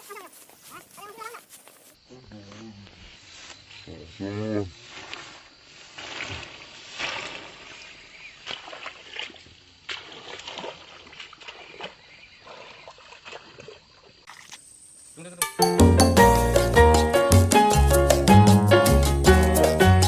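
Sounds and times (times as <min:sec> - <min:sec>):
water splashing and sloshing: 0:04.8 - 0:14.6
music with a beat: 0:15.4 - 0:20.0.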